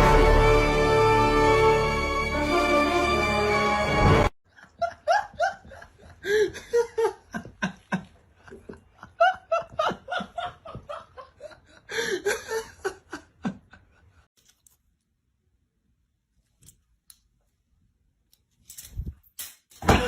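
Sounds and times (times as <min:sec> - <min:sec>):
person laughing: 0:04.6 - 0:14.2.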